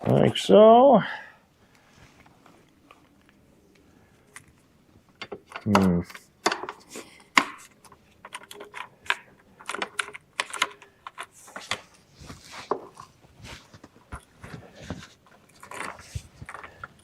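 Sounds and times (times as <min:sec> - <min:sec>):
hard parts clicking and rattling: 0:04.3 - 0:17.0.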